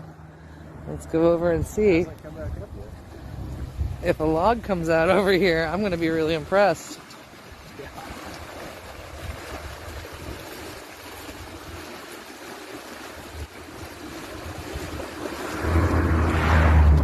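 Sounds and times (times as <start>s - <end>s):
water rushing and churning: 0.0s - 17.0s
wind rumbling on microphone: 1.1s - 6.4s, 7.4s - 12.2s, 12.8s - 17.0s.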